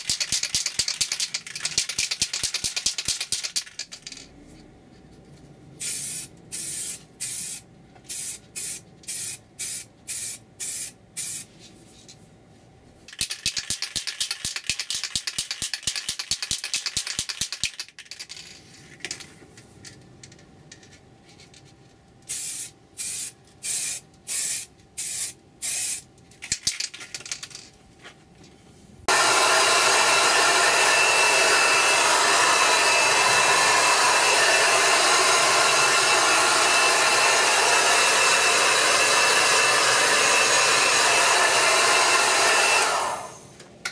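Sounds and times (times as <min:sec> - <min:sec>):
spray can ball rattling: 0:00.0 - 0:04.2, 0:13.1 - 0:18.6
spray can hissing: 0:05.8 - 0:11.5, 0:22.3 - 0:26.0
heat gun blowing: 0:29.1 - 0:43.5.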